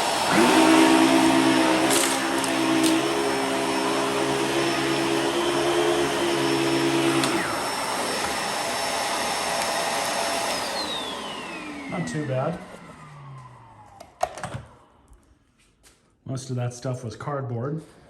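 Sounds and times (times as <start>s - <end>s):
vacuum motor spinning down: 0.0s - 14.9s
upright vacuum running: 0.0s - 15.1s.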